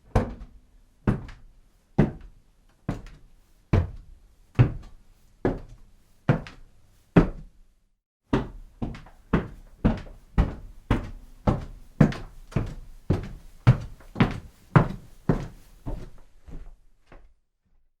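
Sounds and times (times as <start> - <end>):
footsteps on hard floor: 8.4 - 17.8.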